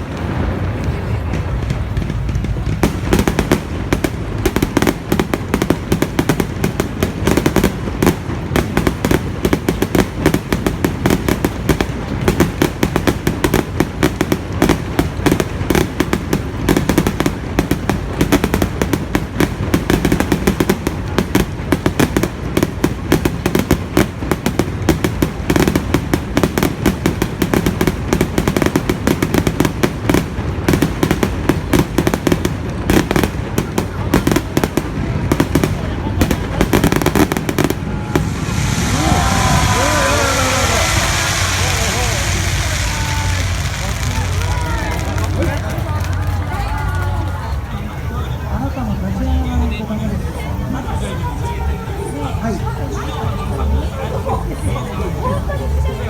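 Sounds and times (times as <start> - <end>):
fireworks bangs and crackles: 0.0 - 56.0.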